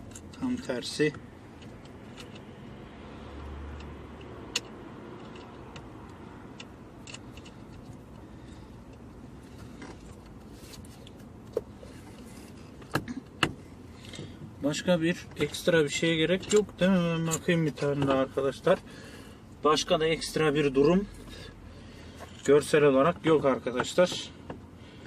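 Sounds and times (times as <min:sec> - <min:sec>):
small parts and tools clicking: 0:00.0 - 0:02.7, 0:03.7 - 0:09.1.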